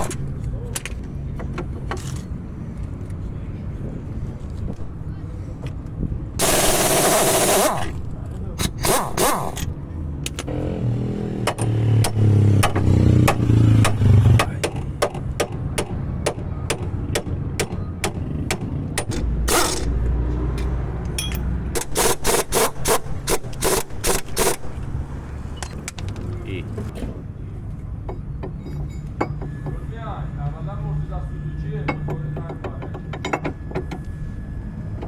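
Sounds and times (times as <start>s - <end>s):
sharp knocks: 11.4s - 20.0s.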